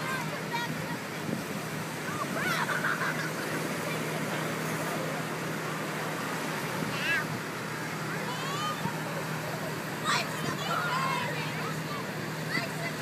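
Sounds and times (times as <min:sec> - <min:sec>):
people's voices: 0:00.0 - 0:13.0.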